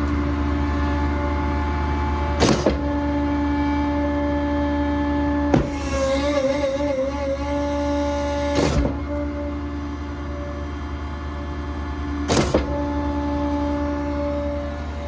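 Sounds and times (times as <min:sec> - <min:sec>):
diesel engine: 0:00.0 - 0:15.0
hydraulic whine: 0:00.0 - 0:15.0
sharp bangs of pump: 0:02.4 - 0:02.9, 0:12.3 - 0:12.8.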